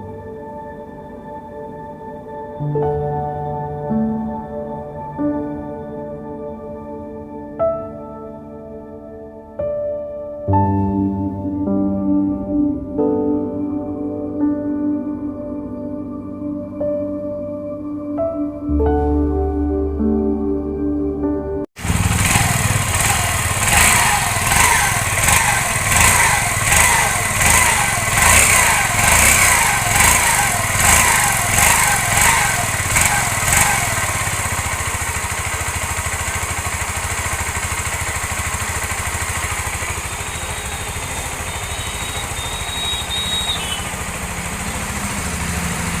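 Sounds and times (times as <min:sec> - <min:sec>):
motorcycle engine idling: 0:21.8 - 0:46.0
motorcycle engine revving: 0:21.8 - 0:46.0.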